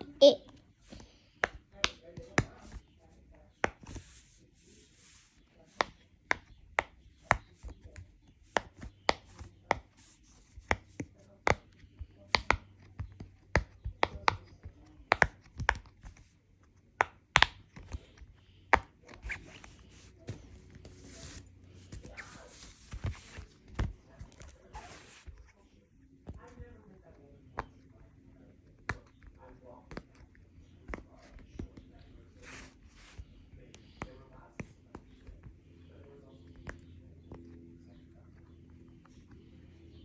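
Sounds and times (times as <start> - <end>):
faint rubbing and rustling: 0.6 - 6.4, 17.8 - 40.0.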